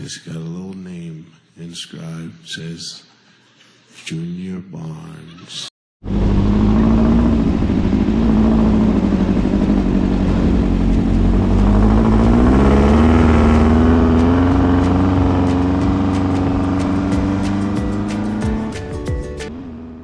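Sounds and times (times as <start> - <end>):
engine running loudly: 6.0 - 18.7.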